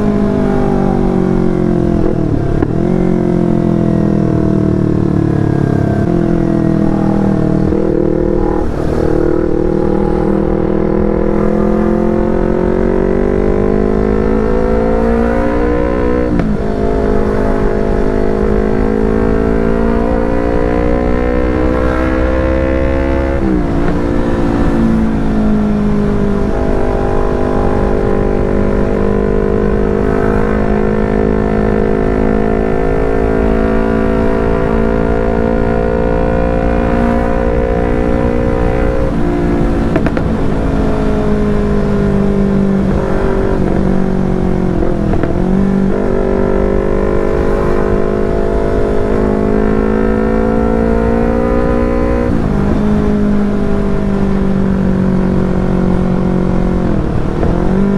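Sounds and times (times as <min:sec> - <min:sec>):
motorcycle engine revving: 0:00.0 - 0:57.9.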